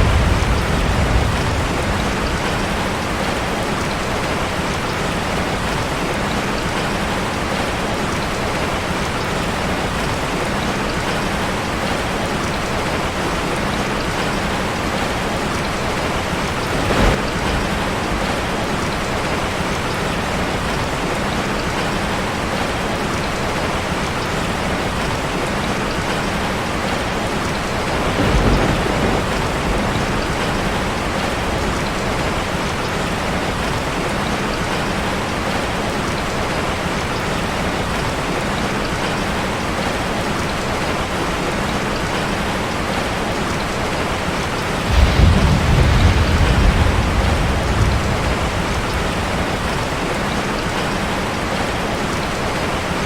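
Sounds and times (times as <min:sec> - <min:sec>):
thunder rolling: 0:00.0 - 0:04.6, 0:15.8 - 0:19.0, 0:27.8 - 0:32.4, 0:44.8 - 0:50.8
rain falling on a street: 0:00.0 - 0:53.0.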